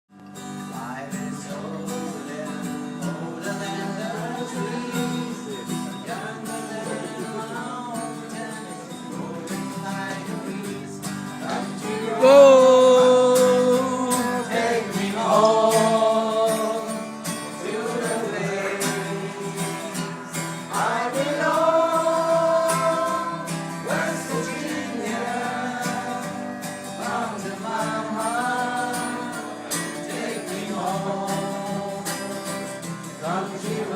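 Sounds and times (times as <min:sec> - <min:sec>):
acoustic guitar music: 0:00.1 - 0:33.9
person singing: 0:00.8 - 0:33.9
strong voice holding long notes: 0:12.1 - 0:14.6.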